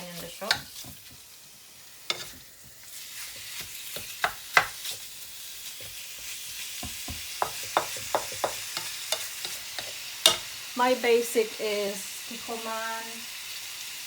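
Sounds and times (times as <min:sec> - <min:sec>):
meat sizzling in a pan: 0:00.0 - 0:14.0
spatula knocking and scraping pan: 0:00.2 - 0:01.2, 0:02.1 - 0:05.1, 0:05.7 - 0:10.5.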